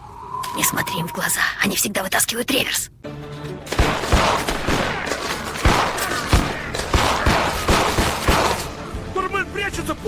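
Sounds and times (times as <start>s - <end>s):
gunshots: 3.7s - 8.8s.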